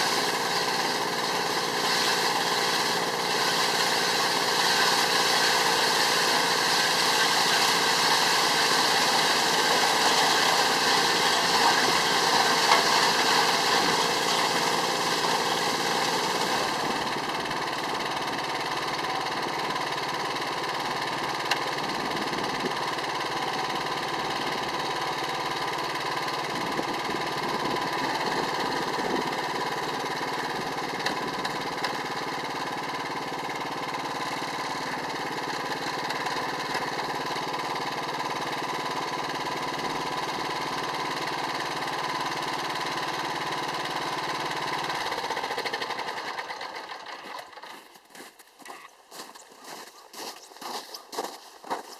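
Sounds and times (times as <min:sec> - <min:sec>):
snowblower engine running: 0:00.0 - 0:48.2.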